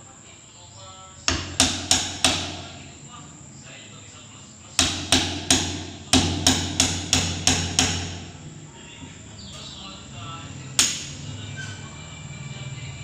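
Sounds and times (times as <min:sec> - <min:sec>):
hammer striking wooden door: 0:01.3 - 0:02.8, 0:04.8 - 0:08.3.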